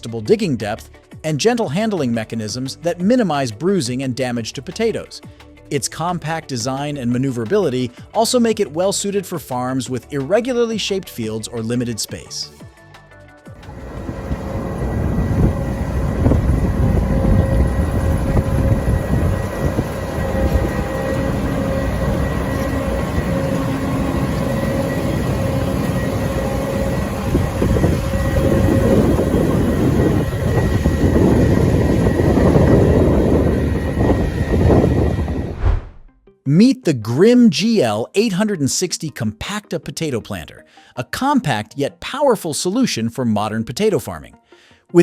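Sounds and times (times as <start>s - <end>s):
steady whine: 13.5s - 36.2s
farm machinery diesel engine: 13.6s - 35.6s.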